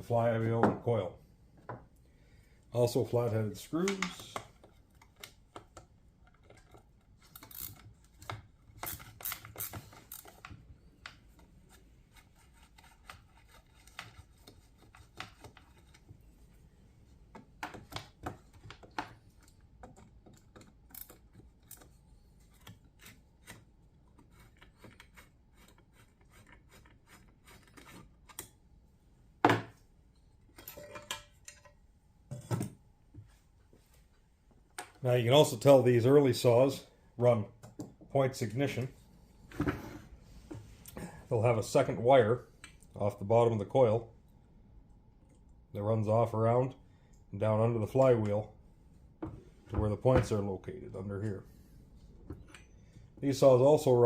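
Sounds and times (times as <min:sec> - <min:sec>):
parts clicking and rattling: 0:03.8 - 0:11.5
screwdriver scraping screws: 0:06.4 - 0:10.5.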